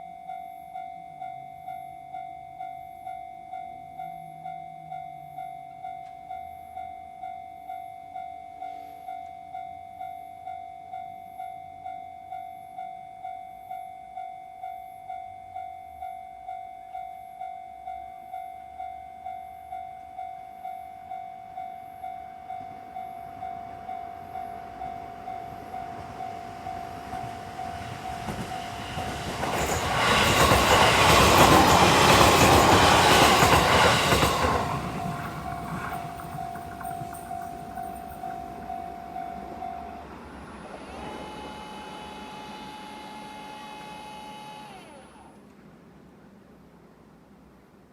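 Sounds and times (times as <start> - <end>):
electric train passing: 15.0 - 46.9
train wheels clattering: 23.6 - 39.9.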